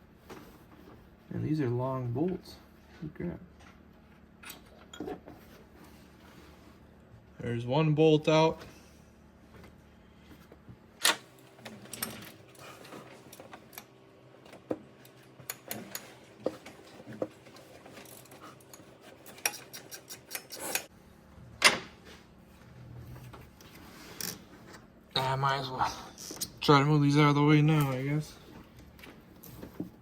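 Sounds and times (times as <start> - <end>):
metal tools clicking on bolts: 18.1 - 20.9.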